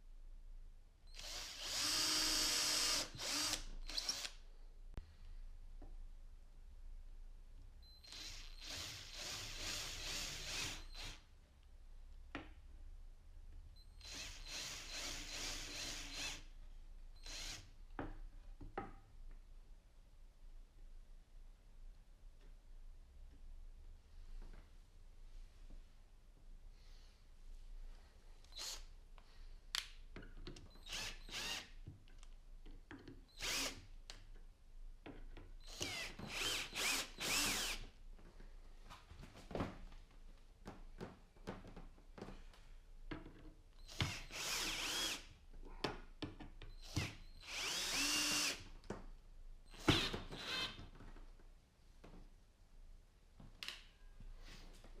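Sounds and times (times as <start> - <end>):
power drill running: 1.2 - 4.4, 8.1 - 11.2, 14.0 - 16.4, 17.2 - 17.6, 28.6 - 28.8, 30.9 - 31.6, 33.4 - 33.8, 35.6 - 37.8, 43.9 - 45.2, 46.8 - 48.6, 49.7 - 50.8.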